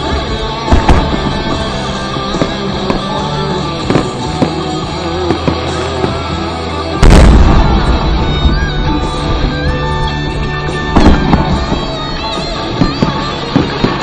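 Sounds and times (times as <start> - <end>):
loud rock music: 0.0 - 14.0
firework pops: 0.7 - 3.2, 3.8 - 6.3, 10.8 - 14.0
loud firework boom: 7.0 - 12.0.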